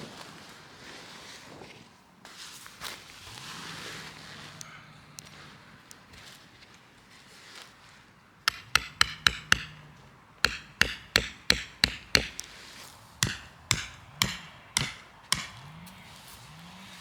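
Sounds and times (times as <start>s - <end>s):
ringing hammer blows: 8.5s - 16.8s.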